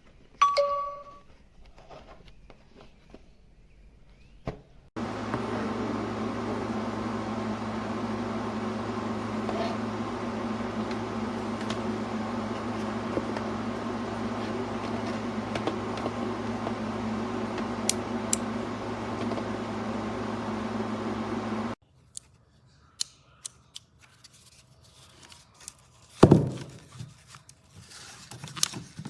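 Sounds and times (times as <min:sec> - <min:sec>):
rotary tool motor running: 0:05.2 - 0:21.7.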